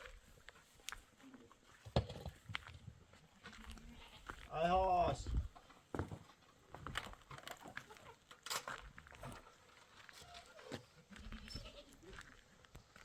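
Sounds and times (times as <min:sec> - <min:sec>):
goats and sheep calling: 0:03.4 - 0:05.0, 0:09.4 - 0:12.4.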